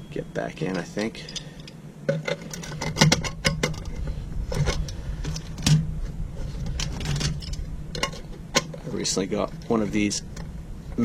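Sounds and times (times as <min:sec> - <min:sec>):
steady low hum: 0:00.0 - 0:11.0
clinks of small metal parts: 0:00.7 - 0:04.0.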